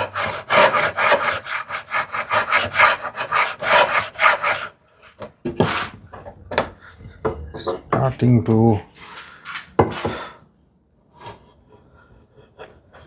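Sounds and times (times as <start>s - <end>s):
plane shaving wood: 0.0s - 4.7s.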